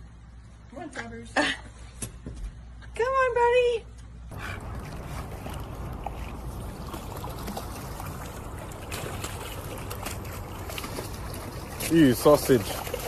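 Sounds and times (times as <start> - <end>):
water trickling: 4.3 - 13.0.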